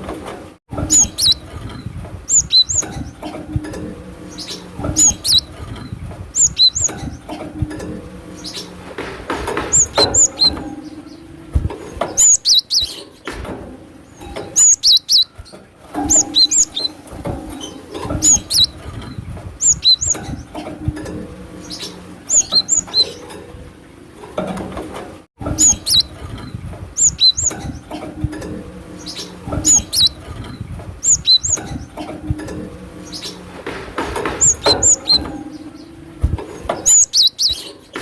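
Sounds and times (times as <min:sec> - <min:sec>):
steady low hum: 0:00.0 - 0:37.5
small bird singing: 0:00.8 - 0:03.3, 0:04.2 - 0:07.3, 0:08.3 - 0:08.8, 0:09.7 - 0:13.3, 0:14.2 - 0:20.5, 0:21.6 - 0:23.3, 0:25.6 - 0:28.0, 0:28.9 - 0:32.0, 0:34.4 - 0:36.0, 0:36.6 - 0:38.0.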